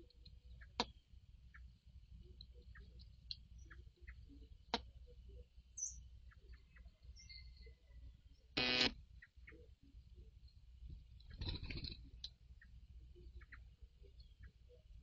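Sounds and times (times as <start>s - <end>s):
bird chirps: 0.0s - 10.6s, 11.2s - 15.0s
low background noise: 0.0s - 15.0s
harsh buzzy call: 8.6s - 8.9s.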